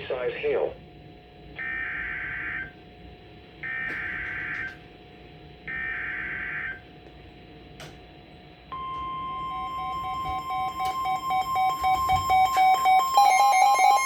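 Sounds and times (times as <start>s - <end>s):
digital data tone bursts: 8.8s - 14.0s.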